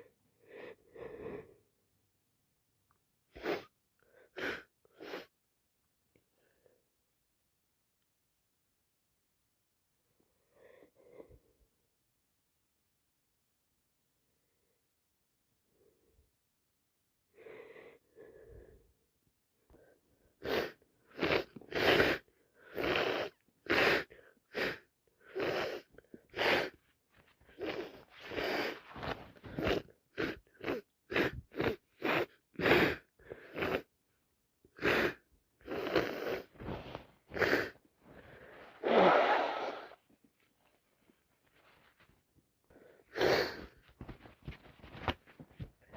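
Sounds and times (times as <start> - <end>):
faint sniffs: 3.3 - 5.4, 20.3 - 26.8, 27.4 - 33.9, 34.8 - 40.0, 42.7 - 43.8.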